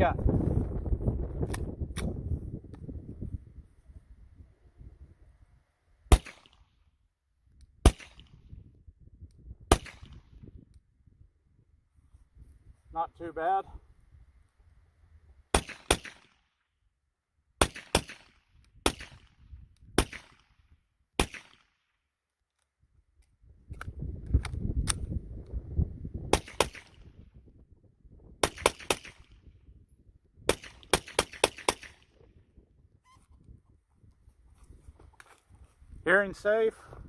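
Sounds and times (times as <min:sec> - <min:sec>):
suppressed pistol shots: 0:06.1 - 0:06.7, 0:07.8 - 0:08.4, 0:09.7 - 0:10.4, 0:15.5 - 0:16.5, 0:17.6 - 0:19.4, 0:20.0 - 0:20.6, 0:21.2 - 0:21.8, 0:26.3 - 0:27.1, 0:28.4 - 0:29.4, 0:30.5 - 0:32.1.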